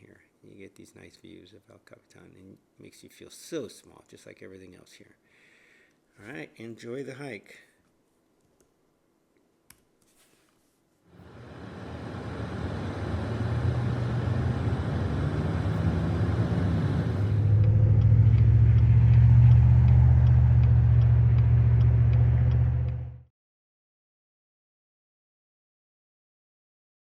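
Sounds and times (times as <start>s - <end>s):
loud low mechanical rumble: 11.1s - 23.3s.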